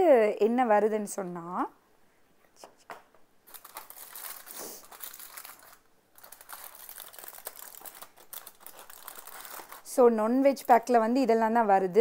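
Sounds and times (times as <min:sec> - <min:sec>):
food packaging crinkling: 0:03.4 - 0:11.0.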